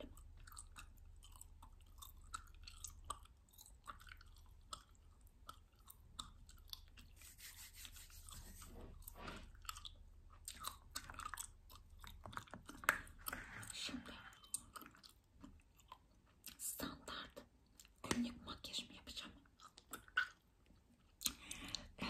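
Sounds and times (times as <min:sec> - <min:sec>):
gum chewing mouth smacks: 0:00.0 - 0:07.2, 0:09.0 - 0:16.6, 0:19.5 - 0:21.9.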